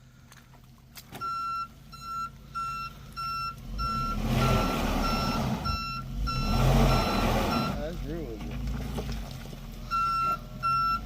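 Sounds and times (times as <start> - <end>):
vehicle engine noise: 0.0 - 11.0
reverse warning alarm beeping: 1.2 - 7.9, 9.8 - 11.0.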